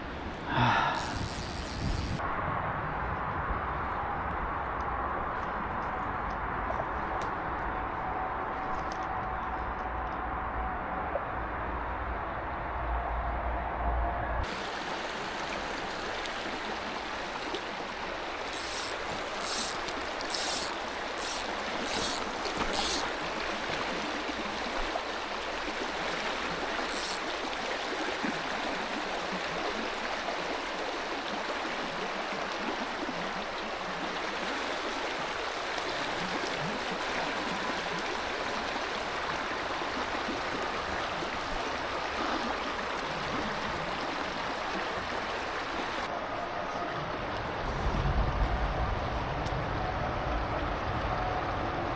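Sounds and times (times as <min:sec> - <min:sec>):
mountain stream flowing: 0:14.4 - 0:51.9
short high hissy noises: 0:18.5 - 0:23.1.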